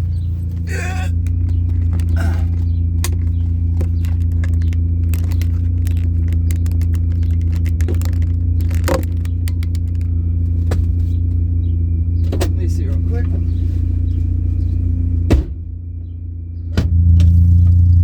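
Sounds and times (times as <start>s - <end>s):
car engine droning steadily: 0.0s - 18.0s
small clicks and rattles: 1.1s - 10.2s.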